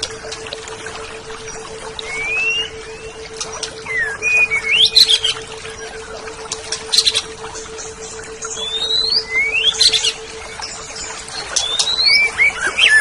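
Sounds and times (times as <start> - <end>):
steady low hum: 0.0 - 13.0
bird singing whistles: 2.0 - 5.4, 7.8 - 13.0.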